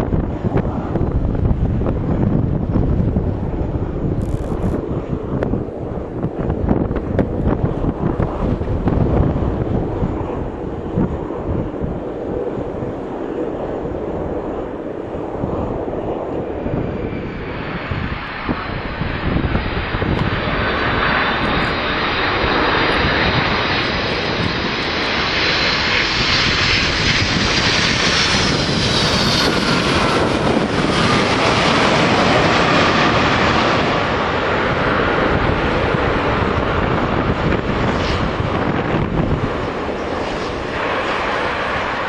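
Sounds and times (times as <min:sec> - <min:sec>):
jet airliner engines roaring: 0:00.0 - 0:42.0.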